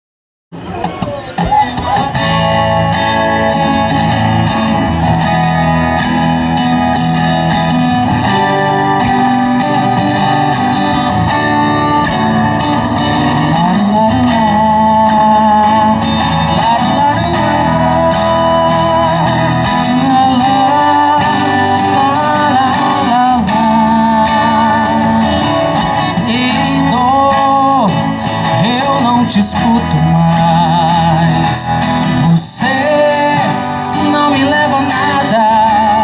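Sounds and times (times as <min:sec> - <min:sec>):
song with guitar accompaniment: 0:00.5 - 0:36.0.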